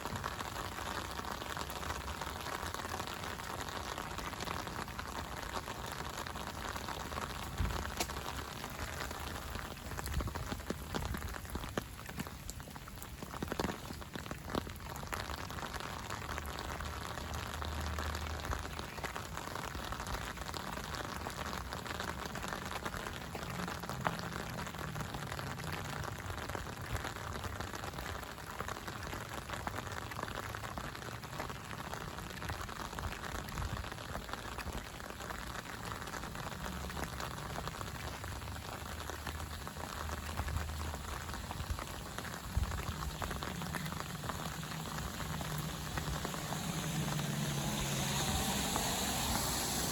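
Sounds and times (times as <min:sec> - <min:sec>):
steady rain falling: 0:00.0 - 0:49.9
low rumble: 0:41.1 - 0:49.9.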